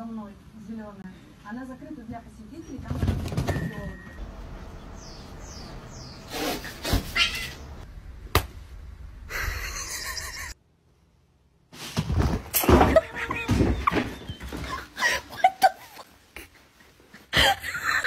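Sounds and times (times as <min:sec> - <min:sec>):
cat sounds: 0:06.3 - 0:07.8.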